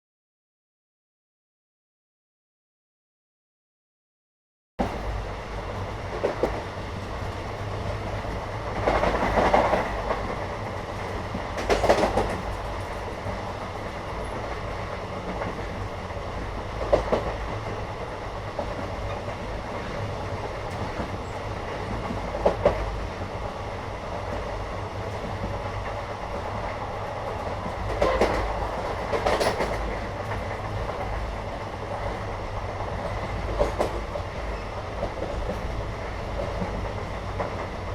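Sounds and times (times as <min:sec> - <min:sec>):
train clanks and rattles: 0:04.8 - 0:37.9
train rumbling: 0:04.8 - 0:37.9.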